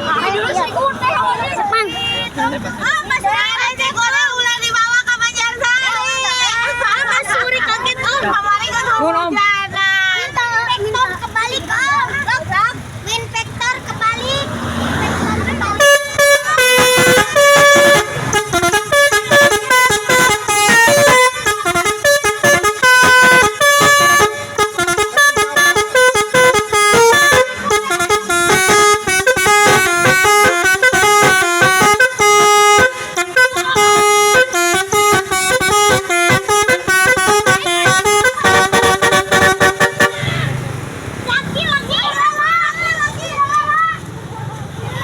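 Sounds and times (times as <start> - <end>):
high-pitched bus horn tune: 15.0 - 40.6.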